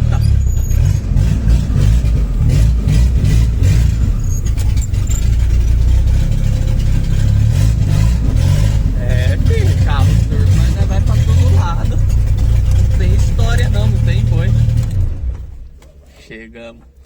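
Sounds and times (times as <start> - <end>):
turbocharged car engine running: 0.0 - 16.1.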